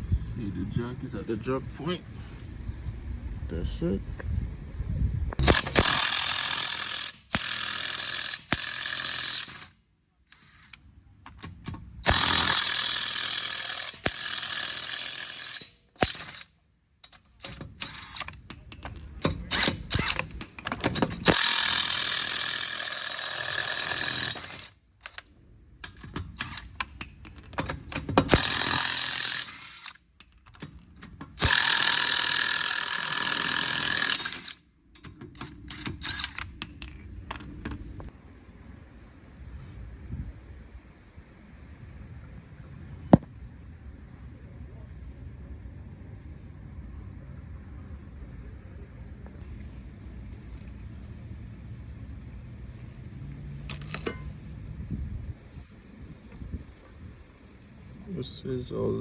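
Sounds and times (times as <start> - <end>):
impact wrench spinning lug nuts: 5.4 - 37.9, 53.0 - 54.4
clicks and handling: 15.6 - 21.4, 24.4 - 28.5, 29.4 - 31.6, 53.6 - 54.4.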